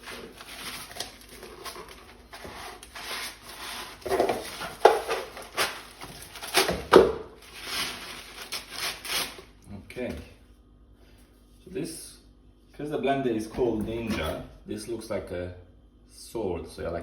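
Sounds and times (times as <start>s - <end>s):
sharp knocks and scrapes: 0.0s - 8.2s
cardboard and wrapping rustling: 0.0s - 9.6s.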